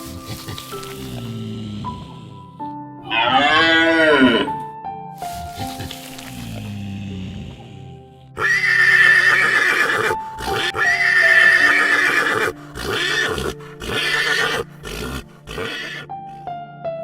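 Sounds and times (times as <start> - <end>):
background music: 0.0 - 17.0
horse whinnying: 3.0 - 4.6, 8.4 - 16.1.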